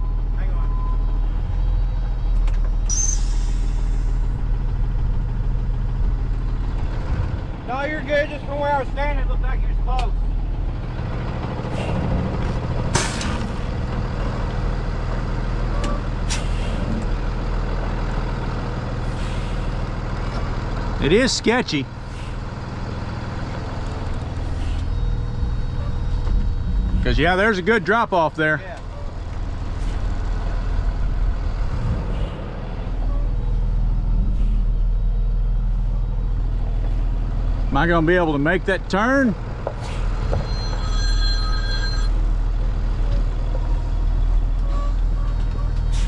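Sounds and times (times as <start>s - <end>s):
diesel engine running: 0.0s - 46.0s
air brake hiss: 2.9s - 4.3s, 16.3s - 16.9s, 19.1s - 19.7s.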